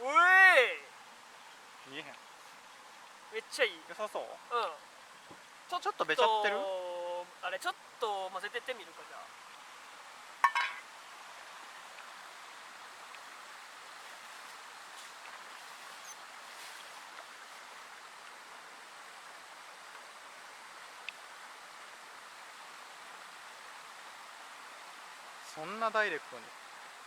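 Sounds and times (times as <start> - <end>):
faint click: 21.0 - 21.2.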